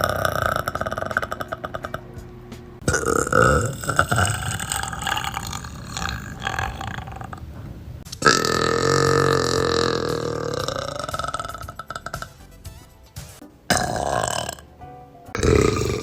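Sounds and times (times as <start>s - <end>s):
women burping: 0.0s - 2.2s, 2.8s - 7.4s, 8.2s - 12.4s, 13.7s - 14.6s, 15.4s - 16.0s.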